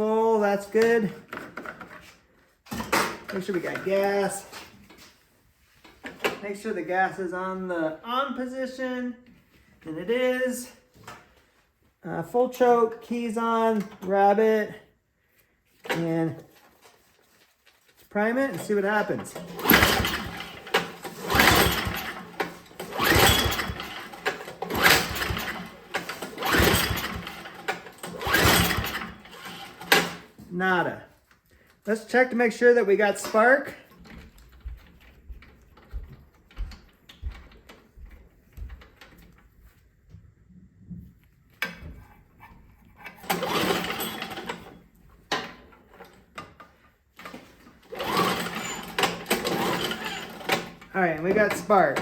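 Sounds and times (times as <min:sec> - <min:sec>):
pull-starter rope whirring: 0:18.5 - 0:30.3, 0:43.0 - 0:44.8, 0:47.2 - 0:52.0
engine cranking: 0:19.2 - 0:30.2, 0:43.1 - 0:44.8, 0:47.2 - 0:52.0.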